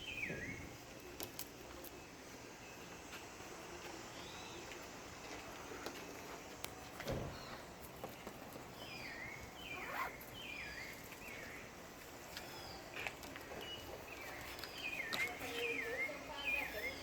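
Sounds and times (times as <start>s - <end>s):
faint outdoor hiss: 0.0s - 17.0s
bird chirping: 7.2s - 11.8s, 12.4s - 17.0s.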